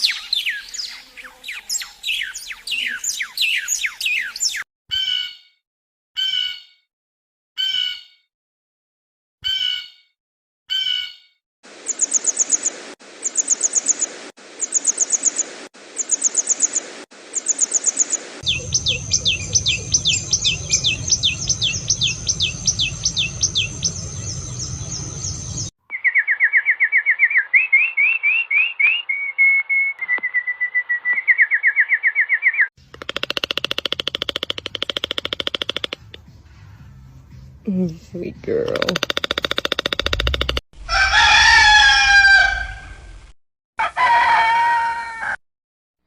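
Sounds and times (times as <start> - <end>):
lower bird trilling phrases: 0.0 - 5.4, 18.4 - 24.5, 38.3 - 40.6
buzzy fast-pulsing bird call: 17.3 - 25.7
high bird trills: 17.4 - 36.1.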